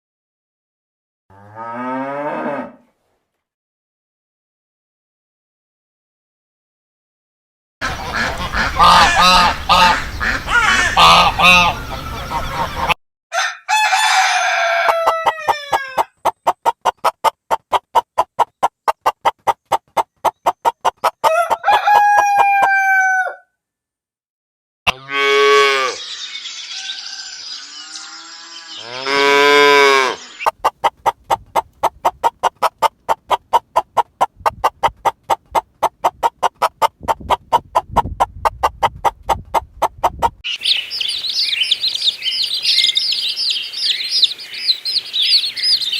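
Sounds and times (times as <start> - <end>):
chickens clucking: 7.8 - 13.0, 14.8 - 22.2, 30.2 - 45.9
small birds chirping: 7.9 - 13.0, 25.8 - 29.6, 40.4 - 45.9
rooster crowing: 13.3 - 16.1, 21.2 - 23.6.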